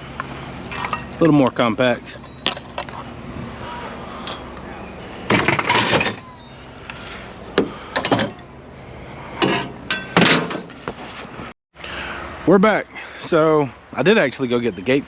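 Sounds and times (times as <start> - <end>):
scrap metal clanks and rattles: 0.2 - 3.1, 4.2 - 8.5, 9.4 - 11.3.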